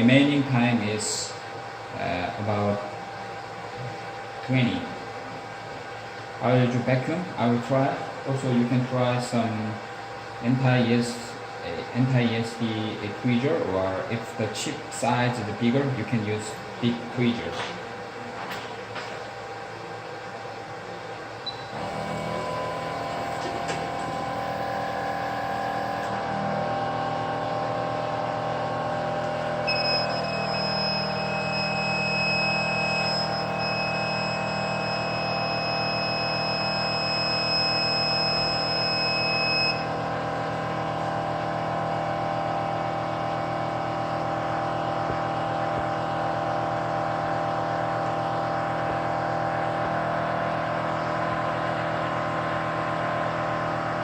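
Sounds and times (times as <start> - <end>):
hot-air heater humming: 0.0 - 54.0
high electronic beep: 29.6 - 39.9.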